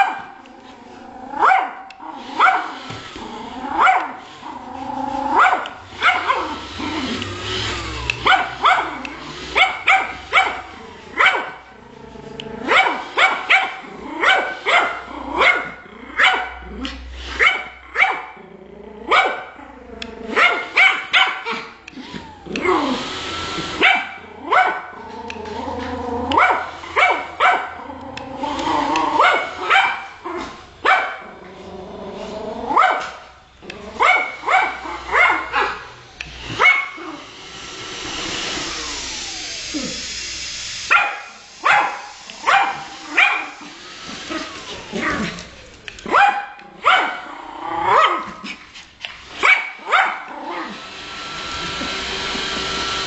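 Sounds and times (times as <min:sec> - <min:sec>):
small dog barking: 0:00.0 - 0:00.4, 0:01.4 - 0:02.8, 0:03.8 - 0:04.2, 0:05.3 - 0:06.6, 0:08.2 - 0:11.7, 0:12.6 - 0:16.7, 0:17.4 - 0:18.4, 0:19.1 - 0:19.5, 0:20.3 - 0:21.8, 0:23.8 - 0:25.0, 0:26.3 - 0:27.8, 0:29.1 - 0:31.4, 0:32.7 - 0:33.3, 0:34.0 - 0:35.9, 0:36.6 - 0:37.2, 0:40.9 - 0:43.6, 0:46.1 - 0:47.3, 0:47.9 - 0:48.4, 0:49.4 - 0:50.7
dog growling and whining: 0:00.5 - 0:13.2, 0:13.8 - 0:20.8, 0:21.4 - 0:32.8, 0:33.6 - 0:35.9, 0:36.6 - 0:37.3, 0:38.6 - 0:40.3, 0:42.3 - 0:49.0, 0:49.8 - 0:50.8.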